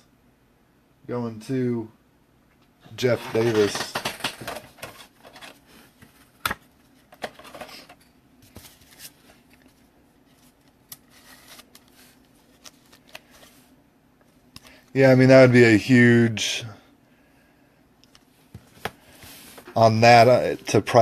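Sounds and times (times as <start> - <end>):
cards rustling and sliding: 3.0 - 13.7, 18.5 - 19.8.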